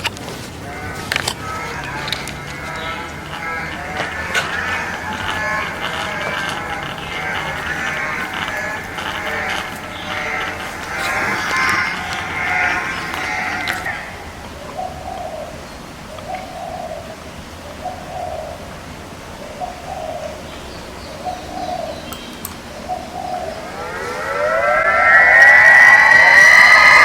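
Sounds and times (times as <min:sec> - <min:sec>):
loud siren-like wail: 0:00.7 - 0:14.2, 0:23.0 - 0:27.0.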